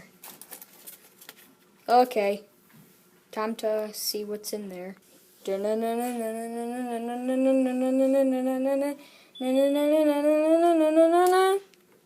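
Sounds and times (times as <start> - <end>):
person singing long notes: 5.5 - 11.6.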